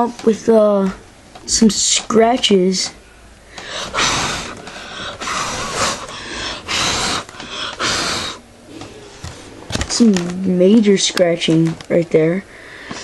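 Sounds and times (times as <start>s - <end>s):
person breathing heavily: 3.5s - 9.2s, 12.5s - 13.0s.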